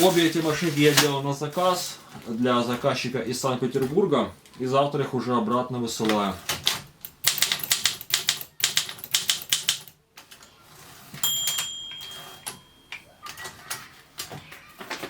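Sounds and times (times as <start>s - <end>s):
typewriter key strikes: 6.6s - 9.9s
typewriter margin bell: 7.2s - 9.9s, 11.2s - 13.5s.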